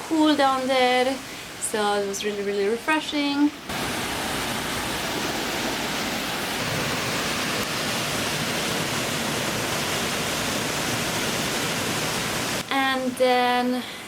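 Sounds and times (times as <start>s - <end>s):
waterfall rushing: 3.7s - 12.7s.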